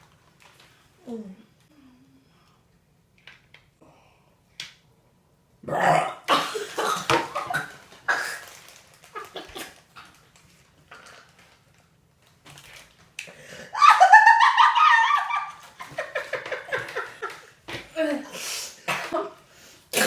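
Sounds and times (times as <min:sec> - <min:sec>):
woman burping: 0:05.6 - 0:08.4.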